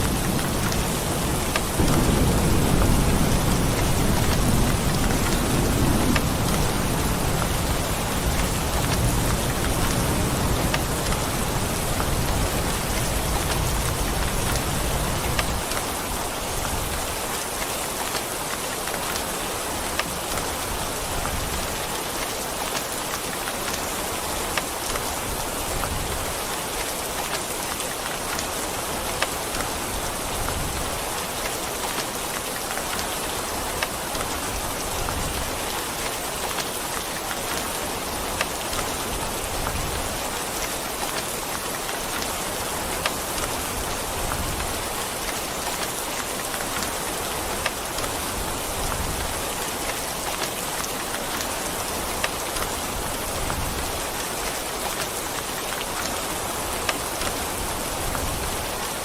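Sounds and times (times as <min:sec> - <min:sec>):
low thunder rumble: 0:00.0 - 0:15.7
steady rain: 0:00.0 - 0:59.0.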